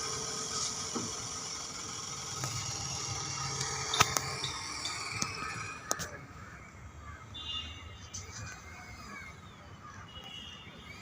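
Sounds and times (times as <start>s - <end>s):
construction machinery running: 0.0s - 7.0s.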